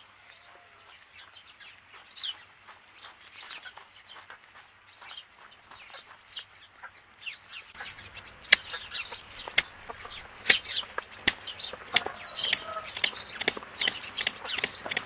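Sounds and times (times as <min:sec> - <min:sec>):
small birds chirping: 0:00.0 - 0:15.0
sharp clicks: 0:07.8 - 0:15.0.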